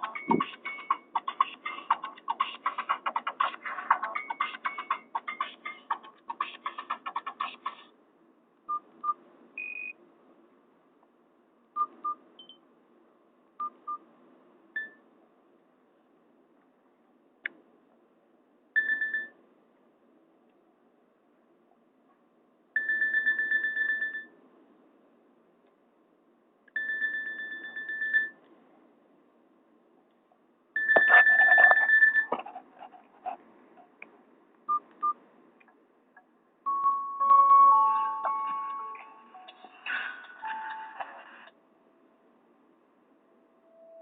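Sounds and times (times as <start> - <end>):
phone key beeps: 0.0 - 1.0
mobile phone ringtone: 22.8 - 24.3, 26.8 - 28.4, 30.8 - 32.3, 36.7 - 41.3.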